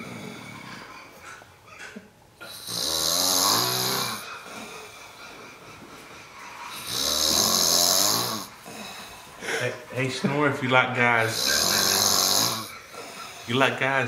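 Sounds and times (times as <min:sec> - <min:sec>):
man snoring: 0:02.4 - 0:04.3, 0:06.7 - 0:08.9, 0:11.2 - 0:12.8
quiet breathing: 0:08.4 - 0:10.1.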